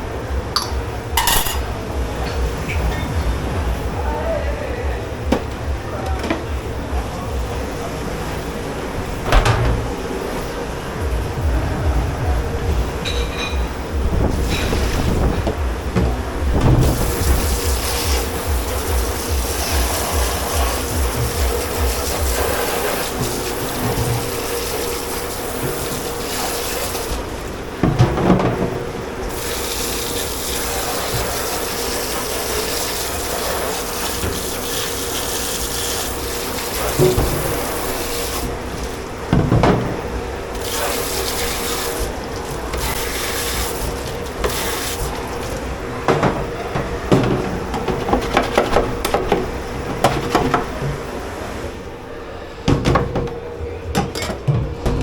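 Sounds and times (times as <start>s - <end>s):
steady machine hum: 0.0s - 55.0s
dishes and pans clattering: 0.6s - 3.2s, 13.0s - 13.8s, 46.0s - 51.0s, 54.0s - 55.0s
tap water running into sink: 16.8s - 27.2s, 29.3s - 39.0s, 40.5s - 49.4s.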